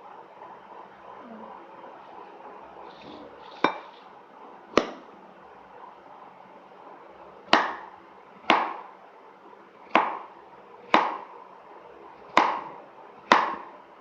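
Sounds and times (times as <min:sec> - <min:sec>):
knife chopping on cutting board: 0:03.4 - 0:04.0, 0:04.8 - 0:05.1, 0:07.5 - 0:07.9, 0:08.5 - 0:08.8, 0:09.9 - 0:10.3, 0:10.9 - 0:11.3, 0:12.2 - 0:13.7.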